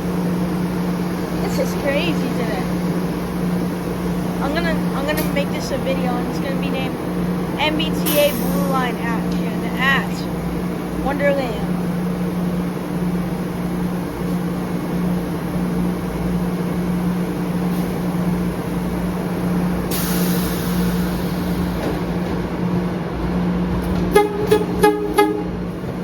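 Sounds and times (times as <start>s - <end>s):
air hissing: 7.0s - 8.9s, 19.8s - 22.0s
train horn toots: 24.1s - 25.7s.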